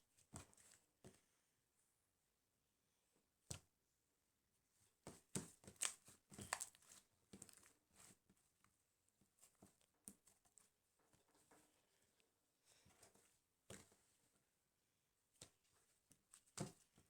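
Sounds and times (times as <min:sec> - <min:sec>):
rustling and crinkling: 0:05.1 - 0:14.1.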